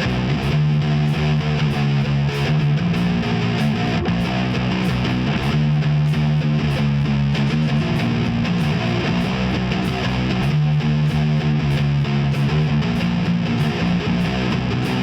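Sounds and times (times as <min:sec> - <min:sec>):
bass guitar: 0:00.0 - 0:15.0
distorted electric guitar riff: 0:00.0 - 0:15.0
steady drum beat: 0:00.0 - 0:15.0.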